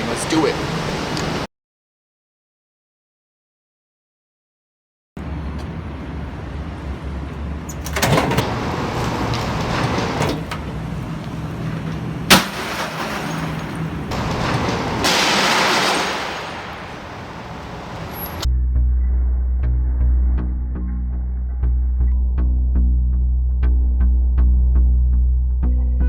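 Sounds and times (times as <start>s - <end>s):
outdoor background noise: 0.0s - 1.5s, 5.2s - 18.5s
microwave oven crashing on ground: 12.3s - 17.4s.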